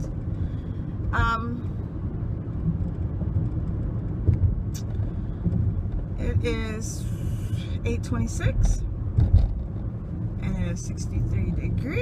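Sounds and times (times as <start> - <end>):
car driving rumble: 0.0 - 12.0.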